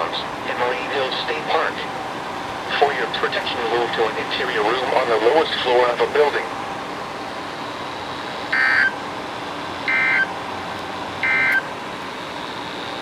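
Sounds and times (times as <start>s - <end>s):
radio hiss: 0.0s - 9.0s.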